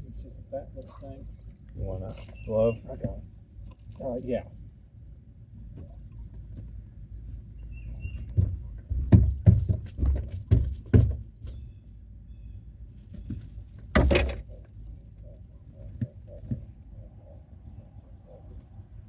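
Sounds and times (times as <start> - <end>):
light metallic jingle: 1.9 - 4.5, 7.9 - 16.5
clattering and knocking: 8.2 - 11.6, 13.0 - 15.0.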